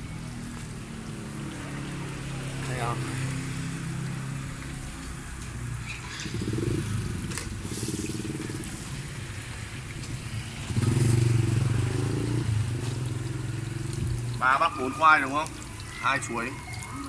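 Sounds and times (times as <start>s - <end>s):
motorbike engine at low revs: 6.1s - 14.2s.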